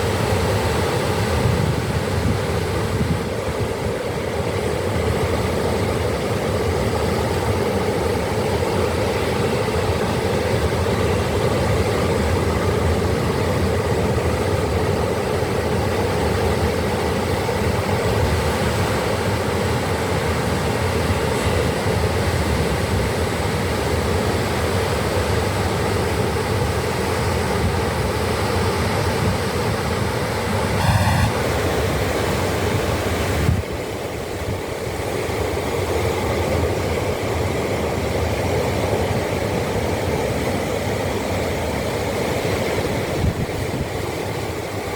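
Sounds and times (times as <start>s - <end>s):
short pitched ringing tone: 30.8s - 31.8s.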